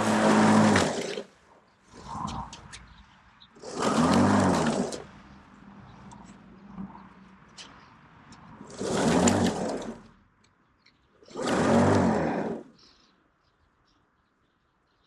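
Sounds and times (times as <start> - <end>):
lawn mower motor starting: 0.0 - 1.3, 3.6 - 5.1, 8.7 - 10.1, 11.2 - 12.8.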